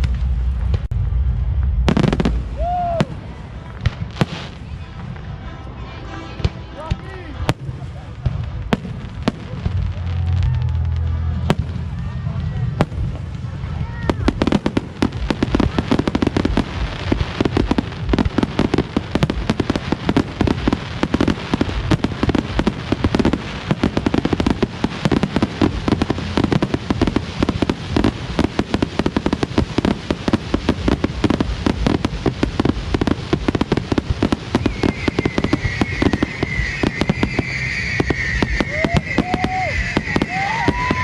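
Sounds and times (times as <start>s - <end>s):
fireworks bangs and crackling: 0.0s - 41.0s
high firework whistle: 34.3s - 41.0s.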